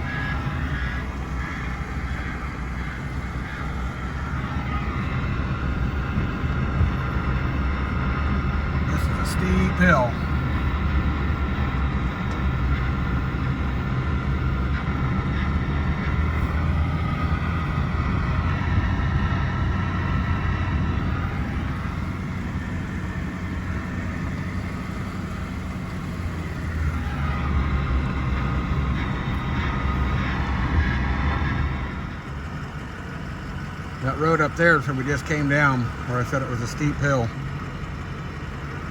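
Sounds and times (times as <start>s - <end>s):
truck engine drone: 0.0s - 38.9s
tyre and road noise: 0.0s - 38.9s.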